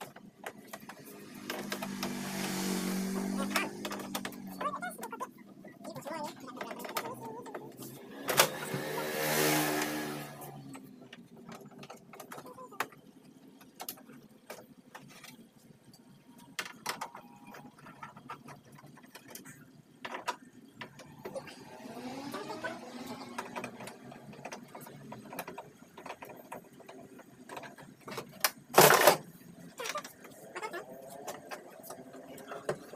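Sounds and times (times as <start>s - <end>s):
motor whirring: 0.8s - 4.6s, 21.2s - 24.4s.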